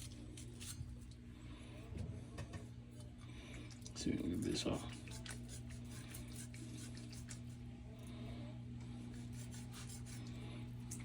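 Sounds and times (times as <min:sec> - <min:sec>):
knife scraping meat: 0:00.0 - 0:01.0, 0:04.5 - 0:07.6, 0:09.1 - 0:11.0
low steady hum: 0:00.0 - 0:11.0.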